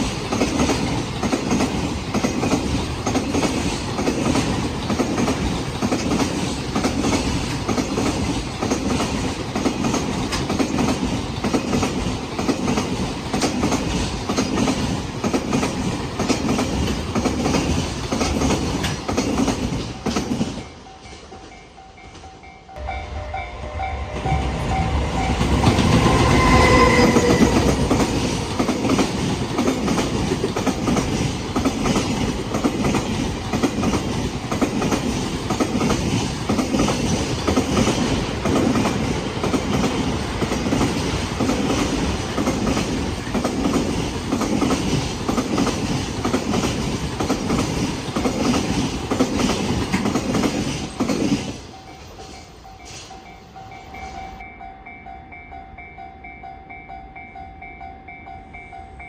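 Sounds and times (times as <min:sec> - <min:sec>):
train wheels clickety-clack: 0:00.0 - 0:22.5, 0:24.2 - 0:54.4
brief pitched tone: 0:22.8 - 0:25.4.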